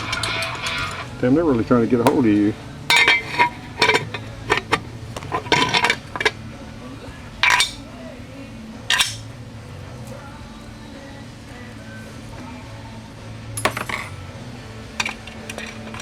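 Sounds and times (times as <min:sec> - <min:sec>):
metal parts clanking together: 0:00.0 - 0:01.2, 0:02.9 - 0:06.4, 0:07.4 - 0:07.8, 0:08.9 - 0:09.3, 0:13.6 - 0:14.2, 0:15.0 - 0:16.0.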